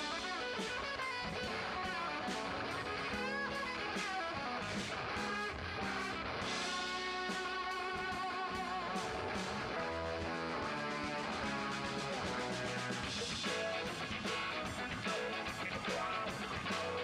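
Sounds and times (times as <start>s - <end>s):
live band with electric guitar: 0.0s - 17.0s.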